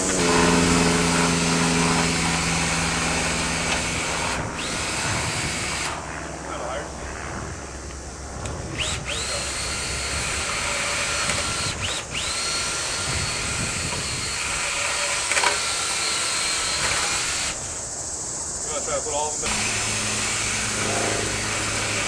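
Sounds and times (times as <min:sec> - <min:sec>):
power drill motor whine: 0:00.0 - 0:06.0, 0:08.7 - 0:17.7, 0:19.4 - 0:22.0.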